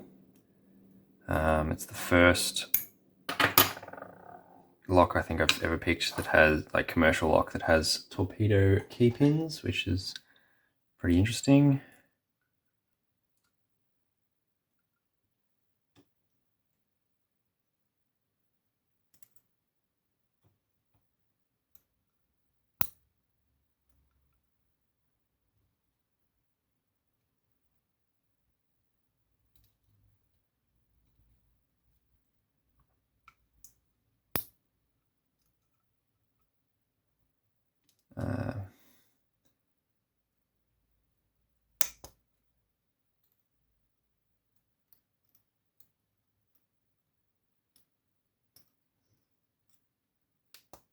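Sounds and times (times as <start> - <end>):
small clicks of lock parts: 19.1 - 19.5, 22.8 - 23.1, 33.2 - 34.6, 41.8 - 42.2, 44.6 - 46.7, 48.5 - 49.8, 50.5 - 50.9
small sharp lock clicks: 41.8 - 42.2.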